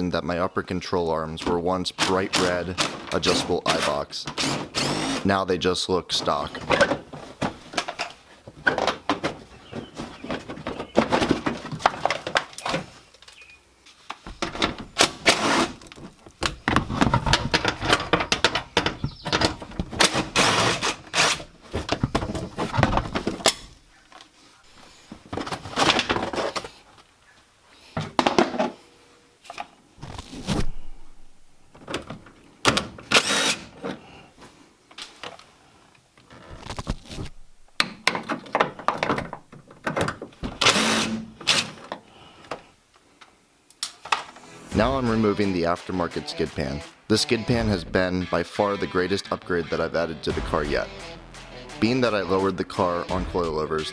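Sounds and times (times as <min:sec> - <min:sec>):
tools and parts clattering: 0:06.1 - 0:13.4, 0:14.2 - 0:24.3, 0:25.0 - 0:26.8, 0:37.8 - 0:42.6.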